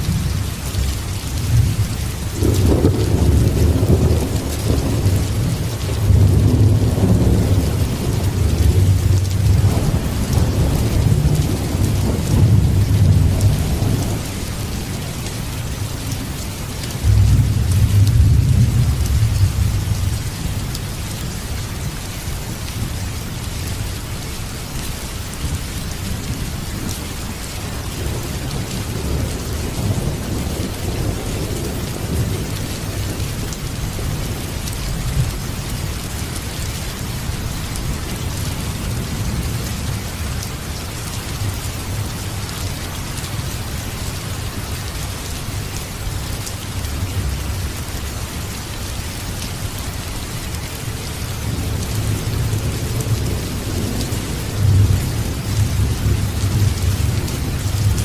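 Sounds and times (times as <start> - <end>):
heavy rain: 0.0 - 58.0
rolling thunder: 1.4 - 15.0, 17.0 - 20.1.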